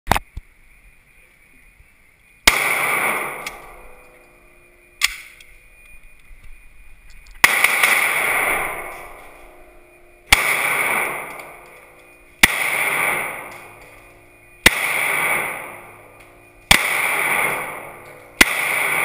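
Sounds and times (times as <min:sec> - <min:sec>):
gunshots: 0:02.4 - 0:04.0, 0:07.4 - 0:09.6, 0:10.3 - 0:19.0.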